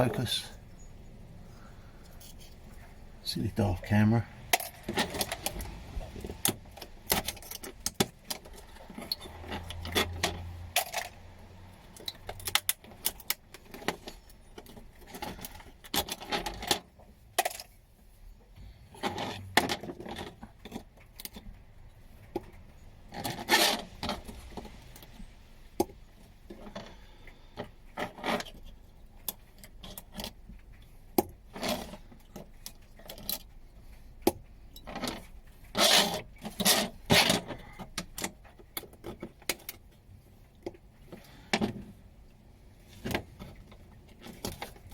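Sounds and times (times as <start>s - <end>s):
rubbing and scraping: 34.9s - 42.0s.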